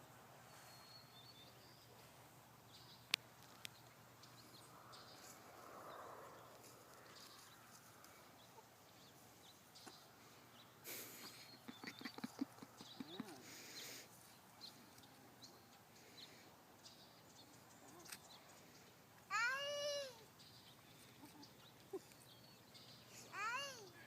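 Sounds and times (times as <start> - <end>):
faint high chirp: 0.4 - 2.1.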